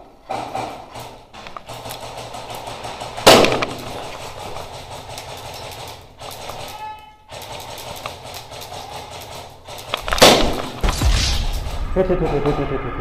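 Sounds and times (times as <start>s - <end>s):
faint sharp airsoft shots: 10.0s - 12.0s
loud bang: 10.1s - 13.0s.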